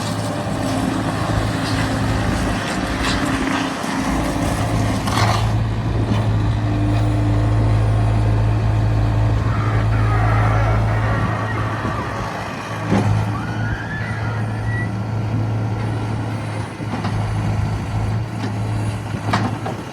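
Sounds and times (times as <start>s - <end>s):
diesel engine droning: 0.0s - 19.9s.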